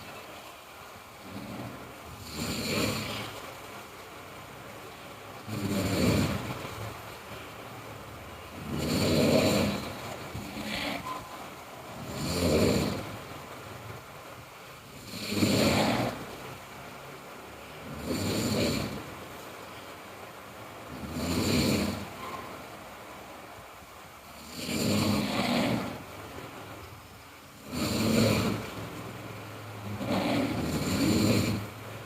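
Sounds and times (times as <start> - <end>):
person snoring: 1.2 - 3.4, 5.4 - 6.8, 8.6 - 11.2, 12.0 - 13.2, 14.9 - 16.3, 17.8 - 19.1, 20.9 - 22.2, 24.4 - 26.1, 27.6 - 28.8, 29.8 - 31.8.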